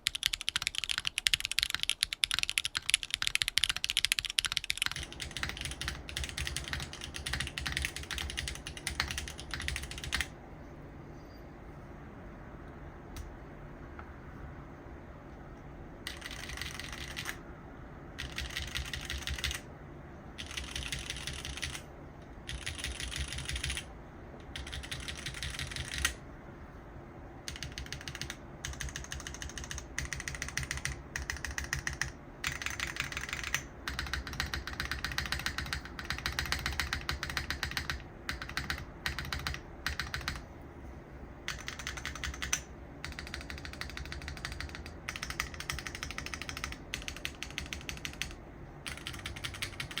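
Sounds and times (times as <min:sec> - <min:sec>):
mechanical keyboard typing: 0:00.0 - 0:10.3, 0:16.0 - 0:17.4, 0:18.2 - 0:19.7, 0:20.4 - 0:26.2, 0:27.4 - 0:40.5, 0:41.5 - 0:50.0.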